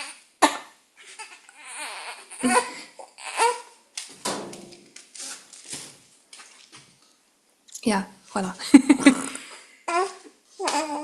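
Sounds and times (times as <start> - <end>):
baby babbling and cooing: 1.2 - 3.7, 9.9 - 11.0.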